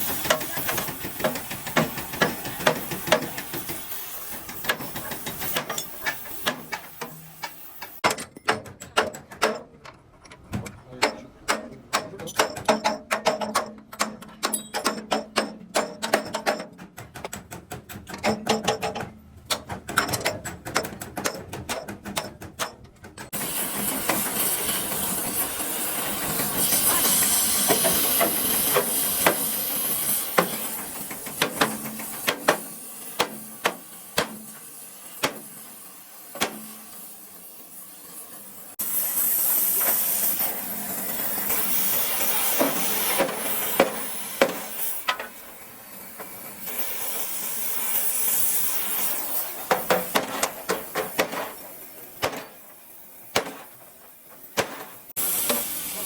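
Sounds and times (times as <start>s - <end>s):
rapid clicking and tapping: 10.6s - 23.4s
loud steady hiss: 23.4s - 56.0s.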